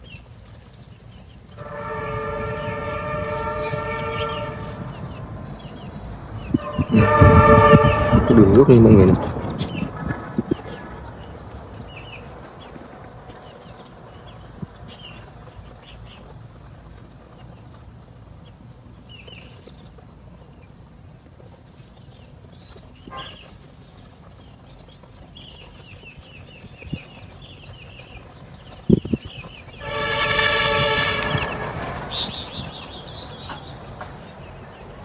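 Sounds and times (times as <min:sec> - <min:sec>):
outdoor background noise: 0:00.0 - 0:35.0
small birds chirping: 0:00.0 - 0:35.0
horn blast: 0:01.6 - 0:10.1, 0:29.8 - 0:33.0.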